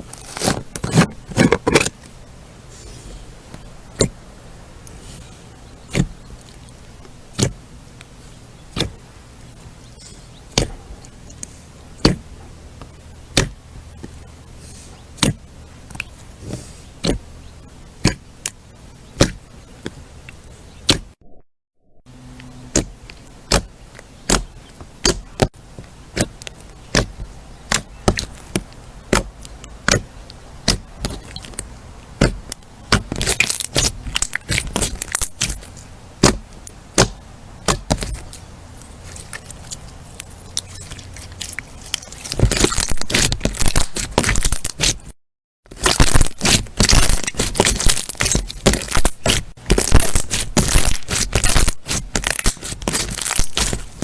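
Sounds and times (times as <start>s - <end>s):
crunchy slime crackling pops: 32.2s - 36.4s, 37.0s - 45.1s, 45.7s - 54.0s.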